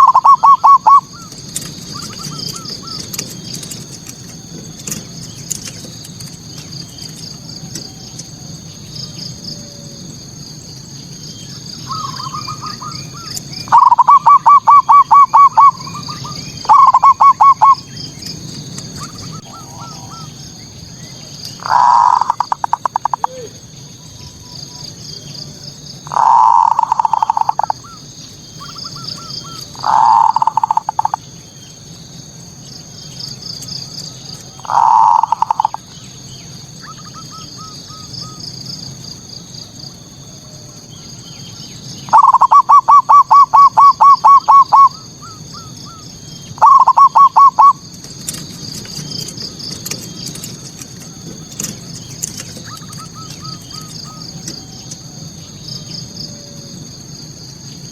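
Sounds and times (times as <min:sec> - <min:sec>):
dove cooing: 0:00.0 - 0:05.0, 0:11.8 - 0:31.2, 0:34.2 - 0:35.9, 0:42.0 - 0:48.4.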